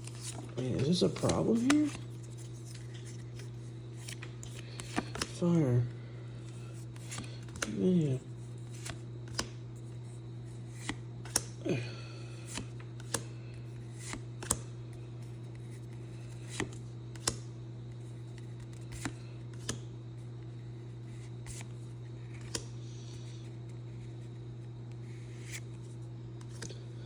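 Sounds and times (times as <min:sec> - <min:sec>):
cards being flipped: 0:00.0 - 0:05.5, 0:06.4 - 0:11.5, 0:12.4 - 0:14.7, 0:15.4 - 0:17.4, 0:18.3 - 0:19.8, 0:21.1 - 0:22.7, 0:25.1 - 0:25.8, 0:26.4 - 0:26.8
steady low hum: 0:00.0 - 0:27.0.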